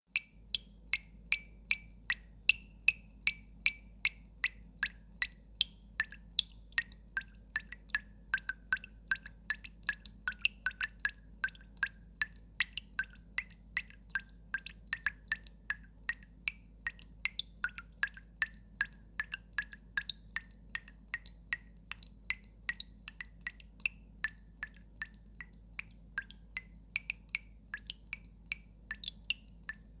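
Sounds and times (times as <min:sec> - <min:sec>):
water drops plinking into water: 0:00.1 - 0:30.0.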